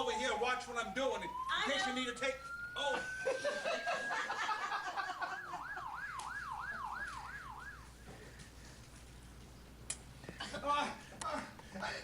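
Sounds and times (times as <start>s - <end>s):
police car siren: 0.0s - 8.1s.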